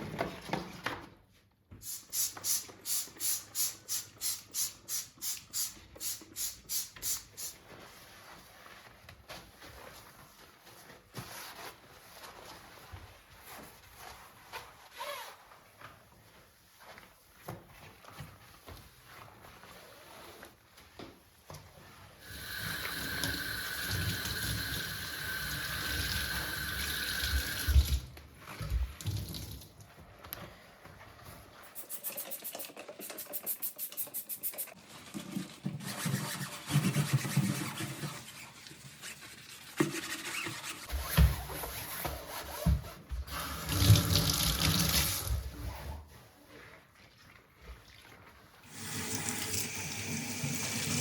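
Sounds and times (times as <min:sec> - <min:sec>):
tap water running into sink: 0:22.3 - 0:28.1, 0:43.3 - 0:45.5, 0:48.7 - 0:51.0.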